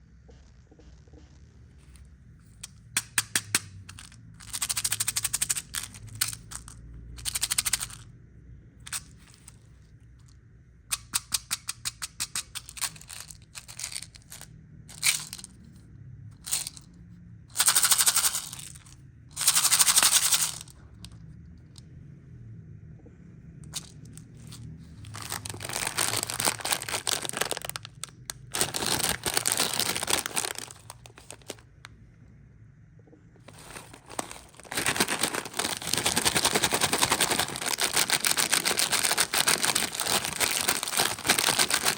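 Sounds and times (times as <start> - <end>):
plastic wrapper crinkling: 3.0 - 8.0, 17.6 - 20.7, 23.7 - 31.6, 33.4 - 41.9.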